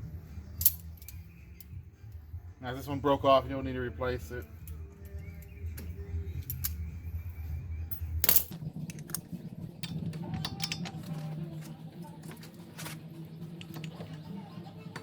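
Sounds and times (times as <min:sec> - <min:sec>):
metal tools clinking: 0:00.6 - 0:01.2, 0:06.4 - 0:06.9, 0:07.9 - 0:11.3.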